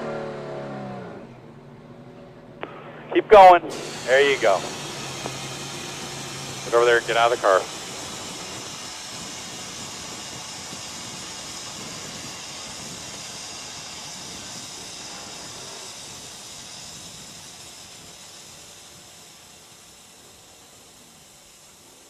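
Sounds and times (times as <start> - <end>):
fire extinguisher hissing: 2.6 - 22.0.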